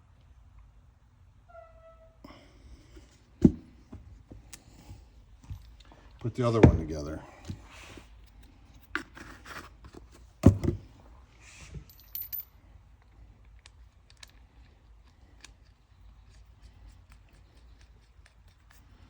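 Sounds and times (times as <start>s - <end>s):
metal parts clicking: 11.9s - 12.5s.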